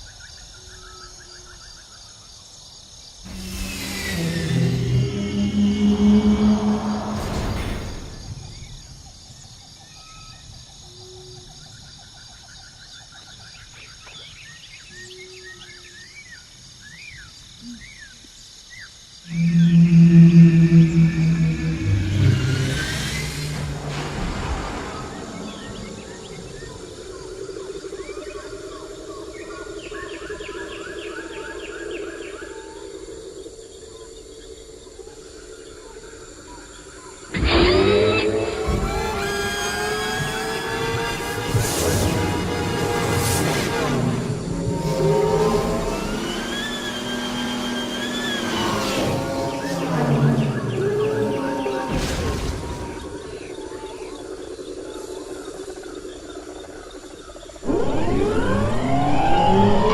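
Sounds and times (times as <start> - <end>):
insect drone: 0.0 - 59.9
loud engine-like rush: 3.3 - 9.0, 19.3 - 27.4, 37.3 - 53.7, 57.6 - 59.9
low fluttering hum: 3.3 - 9.2, 19.3 - 28.5, 39.8 - 59.9.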